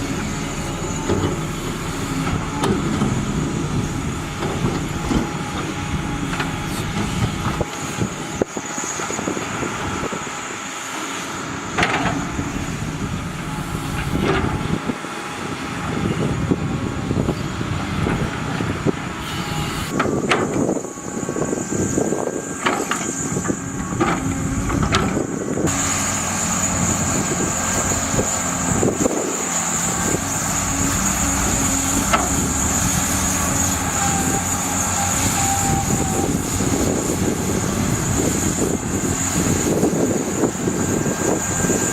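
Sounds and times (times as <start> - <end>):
diesel construction machinery running: 0.0 - 41.9.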